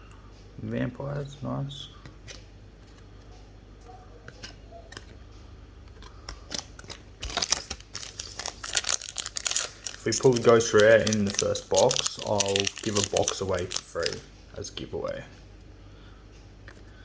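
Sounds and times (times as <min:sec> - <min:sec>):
cards being handled: 0:05.9 - 0:14.3
foil wrapper crinkling: 0:06.5 - 0:14.3.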